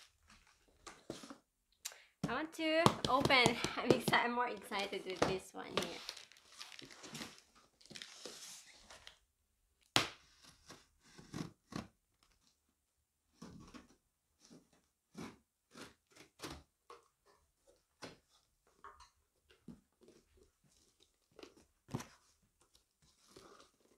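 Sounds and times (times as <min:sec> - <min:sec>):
packaging rustling and tearing: 0:04.6 - 0:09.2.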